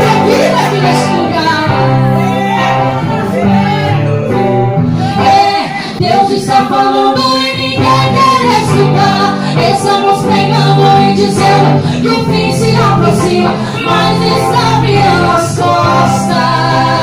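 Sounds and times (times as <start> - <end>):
male and female voices singing: 0.0 - 17.0
musical accompaniment: 0.0 - 17.0.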